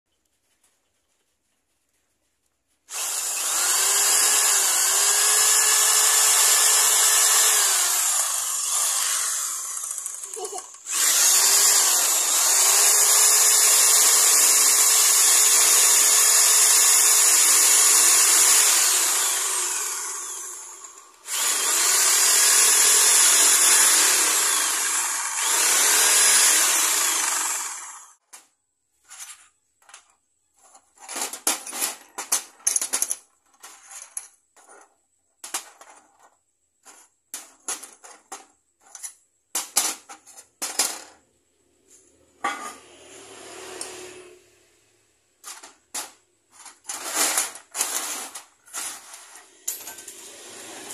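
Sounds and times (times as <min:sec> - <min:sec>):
electric power tool running: 0:02.9 - 0:28.2, 0:42.8 - 0:44.4, 0:49.9 - 0:50.9.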